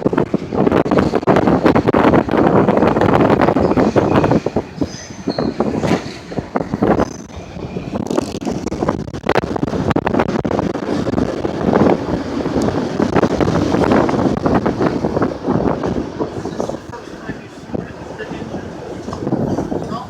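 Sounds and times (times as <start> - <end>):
train rumbling past: 0.0 - 20.0
wheels knocking: 0.0 - 20.0
wind buffeting microphone: 0.0 - 20.0.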